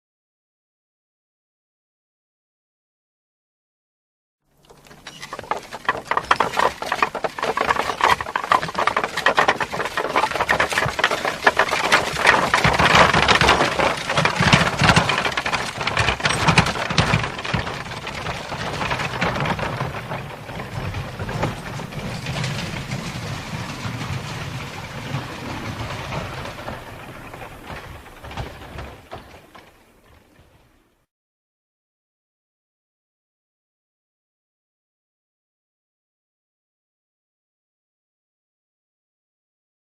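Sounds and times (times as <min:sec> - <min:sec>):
horse and cart clattering: 0:04.6 - 0:31.0.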